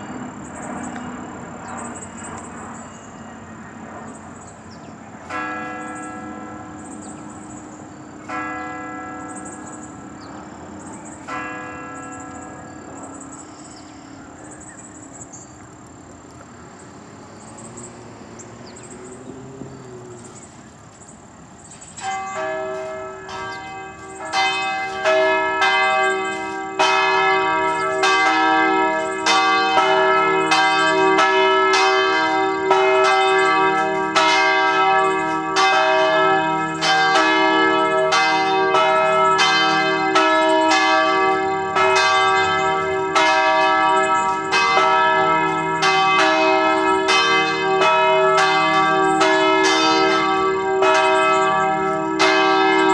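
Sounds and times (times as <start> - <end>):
church bells pealing: 0.0 - 52.9.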